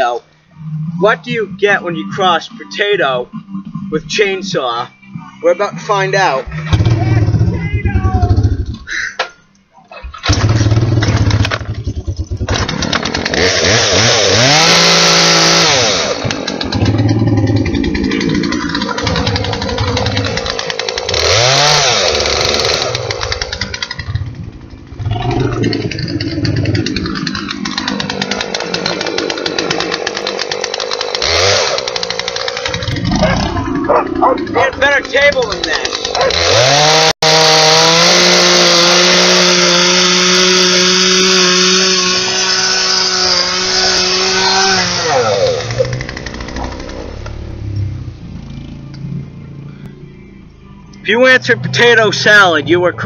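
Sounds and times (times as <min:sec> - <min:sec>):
chainsaw revving: 0:06.2 - 0:08.8, 0:10.1 - 0:47.8.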